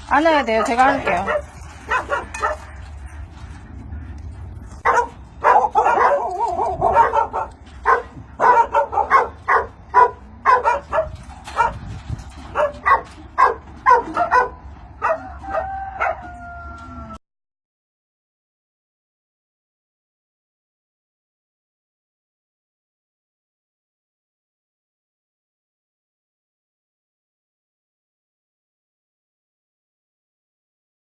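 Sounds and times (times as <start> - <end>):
dogs barking: 0.4 - 16.6.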